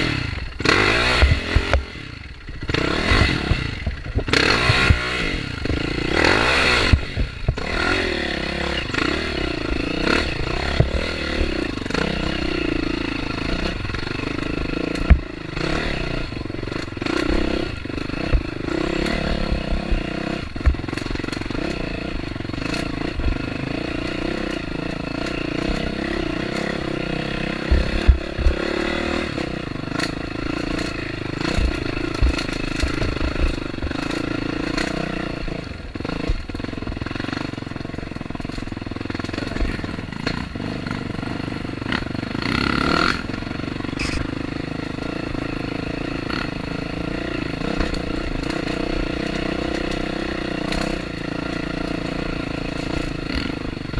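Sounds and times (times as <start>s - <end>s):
motorcycle engine running: 0.0s - 53.9s
clicks and knocks from bike: 14.9s - 15.3s, 20.6s - 21.8s, 29.9s - 35.0s, 36.1s - 40.6s, 44.0s - 44.3s, 47.6s - 53.6s.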